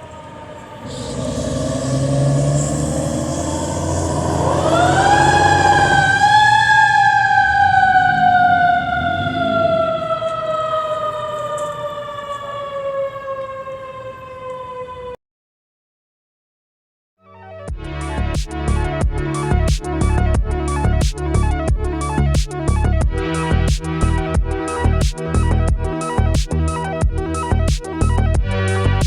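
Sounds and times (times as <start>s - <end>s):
truck engine rumbling: 0.0s - 10.9s
fire truck siren wailing: 0.0s - 15.2s, 18.8s - 29.0s.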